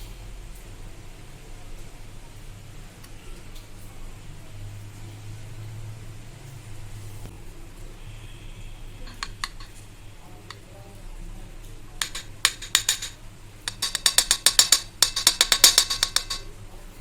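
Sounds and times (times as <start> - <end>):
kitchen objects clicking: 9.1 - 9.8, 12.0 - 16.5.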